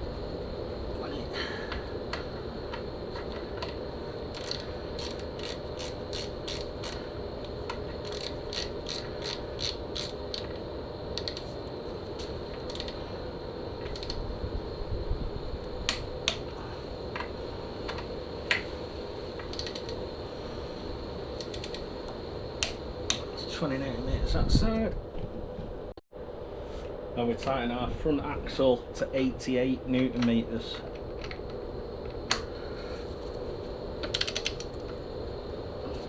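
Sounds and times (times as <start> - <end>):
ratchet wrench clicking: 4.3 - 7.0, 8.0 - 10.5, 11.2 - 11.5, 12.6 - 13.0, 13.9 - 14.2, 19.5 - 20.0, 21.4 - 21.8, 34.1 - 34.8.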